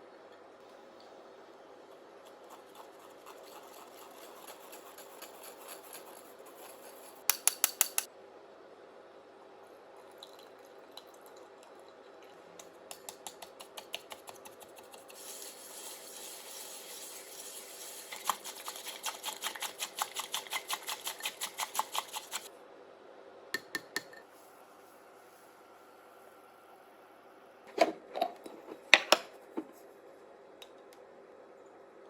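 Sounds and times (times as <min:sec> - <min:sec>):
steady hiss: 0:15.1 - 0:18.3.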